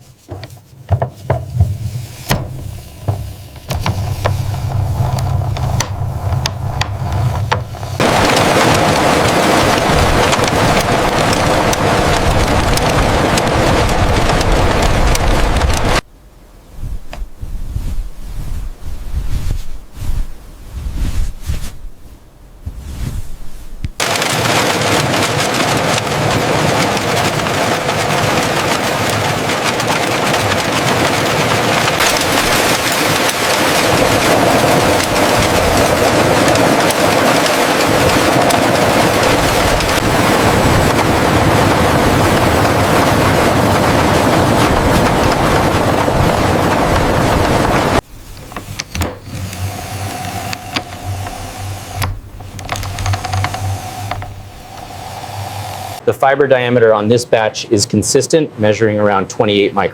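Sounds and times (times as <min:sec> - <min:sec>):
gusty wind on microphone: 0:01.3 - 0:56.1
loud machinery din: 0:02.3 - 0:16.0, 0:24.0 - 0:56.1
sharp clicks: 0:47.3 - 0:56.0.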